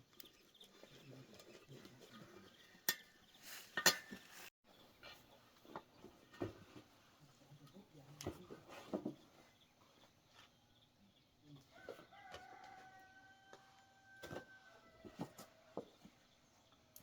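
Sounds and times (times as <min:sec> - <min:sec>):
distant rooster crowing: 0:11.7 - 0:15.8.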